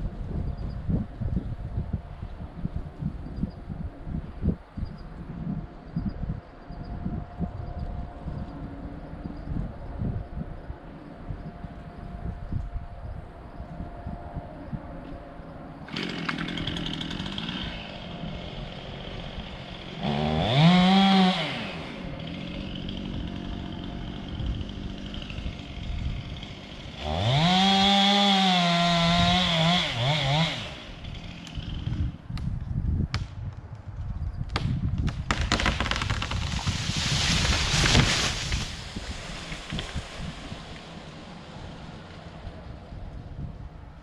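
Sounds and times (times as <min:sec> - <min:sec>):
chainsaw revving: 0:15.9 - 0:32.2, 0:35.3 - 0:41.9
sharp cracks: 0:33.1 - 0:41.0.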